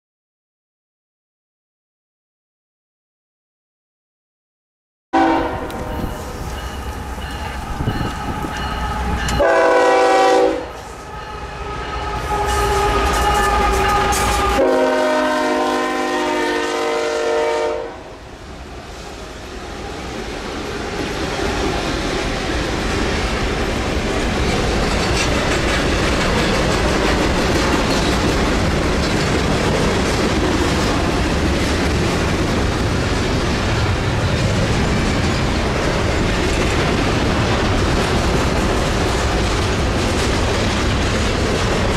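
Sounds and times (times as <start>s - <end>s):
locomotive horn blasts: 5.2s - 6.3s, 7.6s - 18.2s
rail joints clickety-clack: 5.2s - 17.5s, 18.3s - 41.9s
train wheels rumbling on rail: 5.2s - 41.9s.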